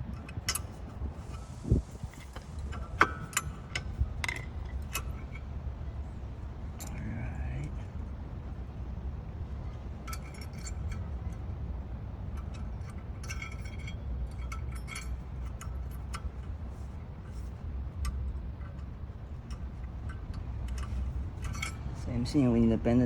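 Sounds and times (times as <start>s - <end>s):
steady low rumble: 0.0s - 23.0s
metal clips clinking: 0.1s - 5.4s, 10.1s - 11.4s, 12.4s - 16.6s, 17.3s - 22.6s.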